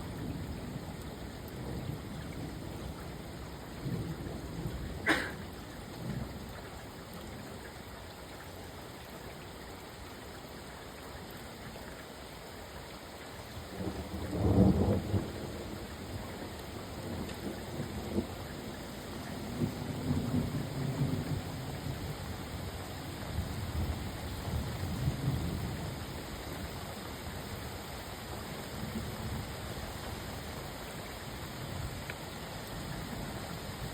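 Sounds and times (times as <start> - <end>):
steady rain: 0.0 - 33.9
thunder rumbling: 13.8 - 16.2.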